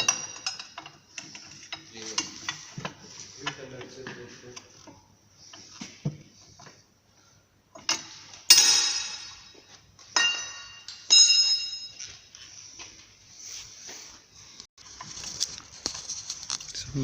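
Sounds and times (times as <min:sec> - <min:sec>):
metal tools clanking: 0:00.0 - 0:04.3, 0:07.8 - 0:12.2.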